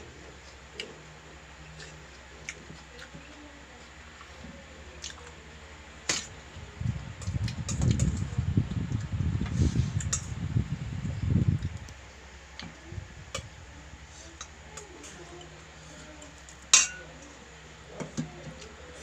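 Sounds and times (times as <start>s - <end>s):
utensil clinking on dish: 16.8s - 17.1s.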